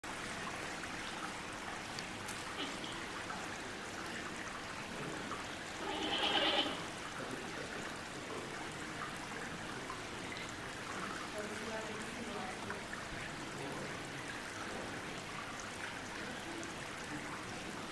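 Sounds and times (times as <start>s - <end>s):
steady rushing hiss: 5.1s - 7.0s.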